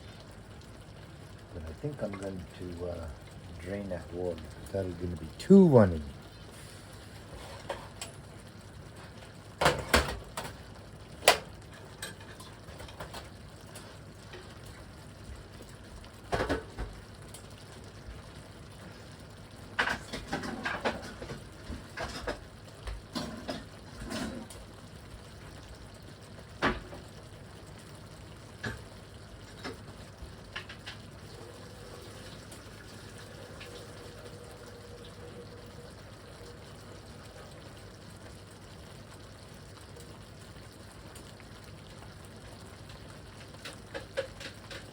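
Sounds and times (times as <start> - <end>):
faint steady background noise: 0.0 - 44.9
pans and utensils clattering: 7.3 - 8.1, 11.3 - 14.5, 19.8 - 22.4, 23.1 - 24.6, 43.5 - 44.9.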